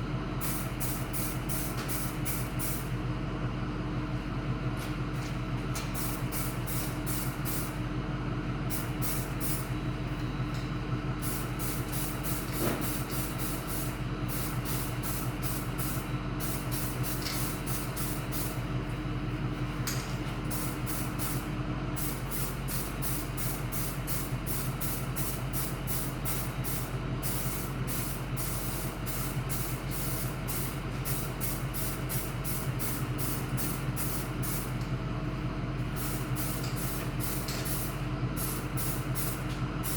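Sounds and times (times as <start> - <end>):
steady motor hum: 0.0 - 39.9
spray gun hissing in bursts: 6.0 - 7.7, 8.7 - 9.6, 11.2 - 18.6, 20.5 - 34.8, 36.0 - 39.9.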